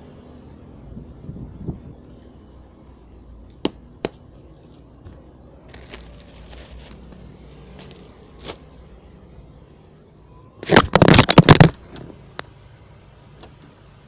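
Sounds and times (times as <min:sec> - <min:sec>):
packaging crackling and scraping: 0:04.5 - 0:08.7, 0:10.6 - 0:11.8
packaging clicks: 0:05.7 - 0:08.6.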